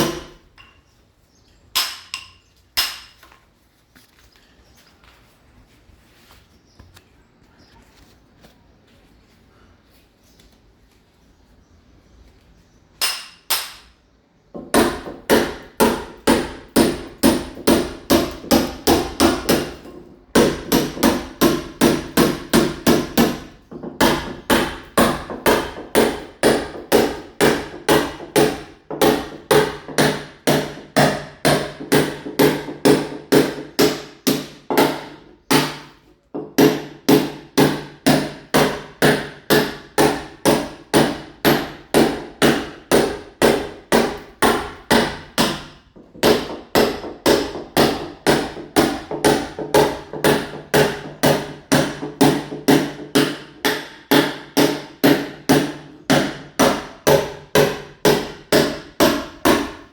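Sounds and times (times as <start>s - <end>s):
hammer chipping wall: 0.0s - 0.6s, 14.5s - 59.9s.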